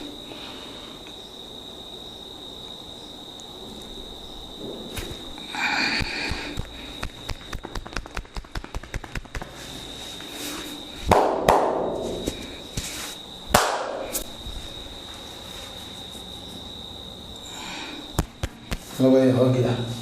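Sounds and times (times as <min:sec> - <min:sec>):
light tapping strikes on body: 0:06.0 - 0:09.6
loud slaps on body: 0:06.3 - 0:09.6, 0:11.1 - 0:12.9, 0:13.5 - 0:14.0.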